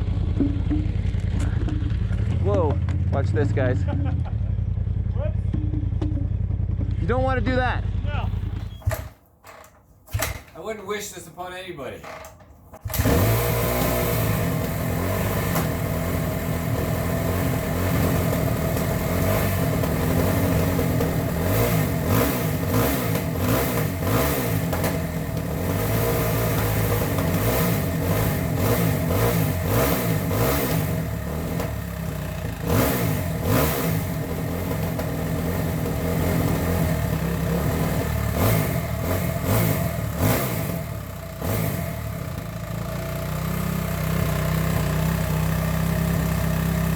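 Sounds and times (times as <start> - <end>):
knocks and clatter: 0.0 - 4.5, 8.3 - 10.8, 11.9 - 13.1, 26.4 - 27.6
dirt bike engine revving: 12.8 - 46.9.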